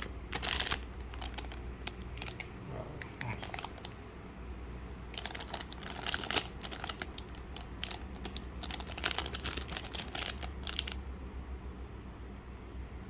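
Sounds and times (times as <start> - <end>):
plastic packaging crinkling: 0.0 - 4.1, 5.1 - 11.0.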